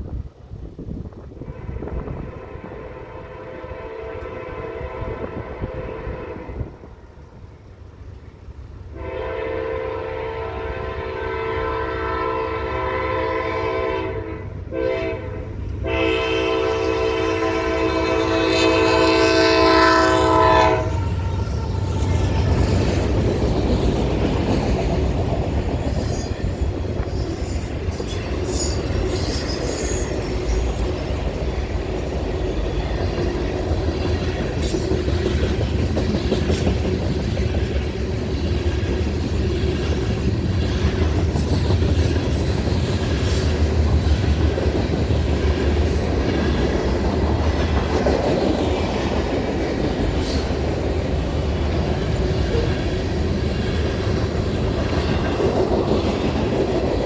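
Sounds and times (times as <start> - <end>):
train wheels rumbling on rail: 0.0 - 57.0
wheels squealing: 20.8 - 33.4.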